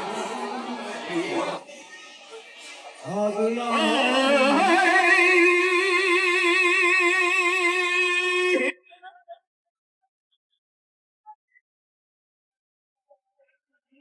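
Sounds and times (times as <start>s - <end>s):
person singing over loudspeakers: 0.0s - 1.6s, 3.0s - 9.2s.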